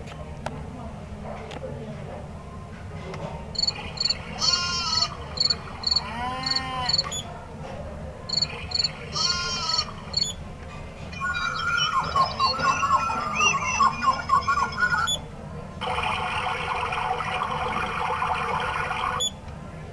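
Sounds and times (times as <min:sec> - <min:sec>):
high insect-like chirps: 0:03.6 - 0:07.2, 0:08.3 - 0:09.4.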